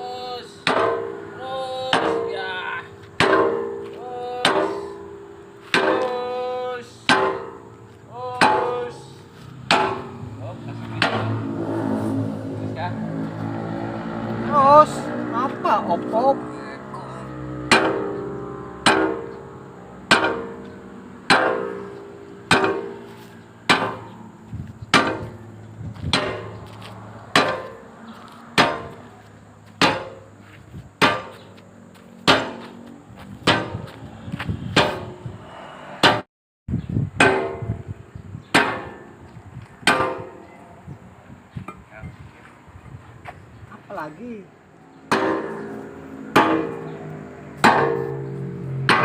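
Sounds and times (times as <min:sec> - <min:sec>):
hammer striking steel: 0:00.6 - 0:12.0, 0:17.6 - 0:24.3, 0:24.9 - 0:25.4, 0:26.1 - 0:26.6, 0:27.3 - 0:27.8, 0:28.6 - 0:29.1, 0:29.8 - 0:30.3, 0:31.0 - 0:31.4, 0:32.2 - 0:32.7, 0:33.4 - 0:33.9, 0:34.8 - 0:35.2, 0:37.2 - 0:37.8, 0:38.5 - 0:39.2, 0:39.8 - 0:40.5, 0:45.1 - 0:47.0, 0:47.6 - 0:49.0.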